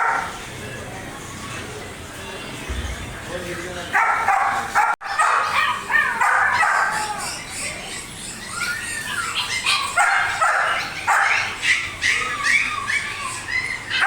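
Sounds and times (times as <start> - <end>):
dog barking and yipping: 0.0 - 0.3, 4.0 - 14.0.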